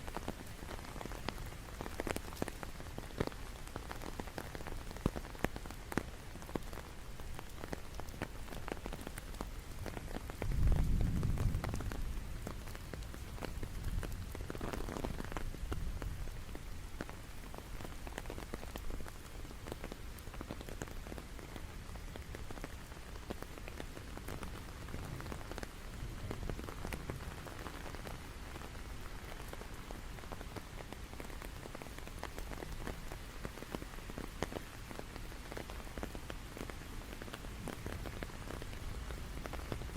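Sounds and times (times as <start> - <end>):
steady rain with drops tapping: 0.0 - 39.9.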